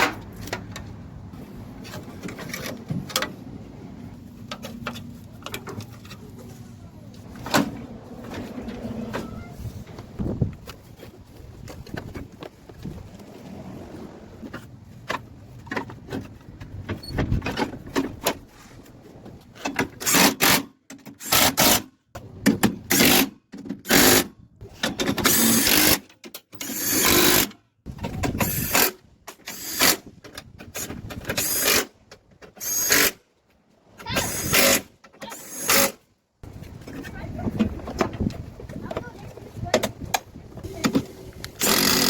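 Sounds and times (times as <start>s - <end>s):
hand tools clicking and rattling: 39.8s - 42.0s
cordless power tool bursts: 41.6s - 42.0s.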